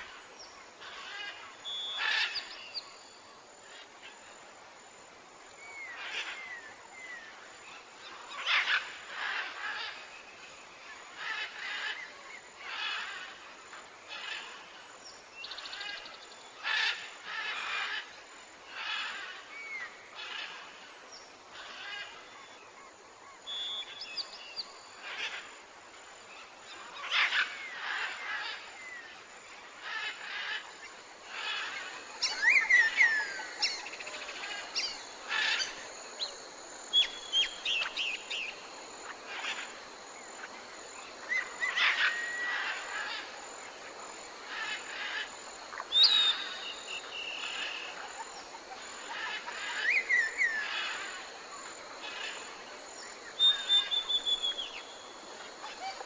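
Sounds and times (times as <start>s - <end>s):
insects hissing: 0.0s - 56.0s
birds calling and whistling: 31.3s - 39.7s, 44.6s - 51.0s, 53.3s - 55.0s.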